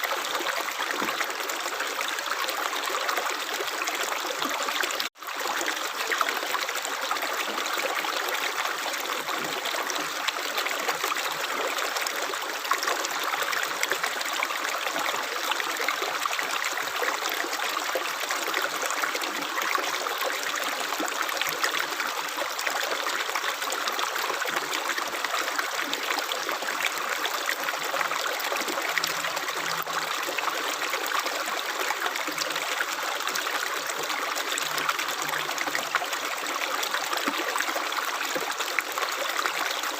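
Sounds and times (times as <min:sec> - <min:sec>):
running water: 0:16.4 - 0:39.9.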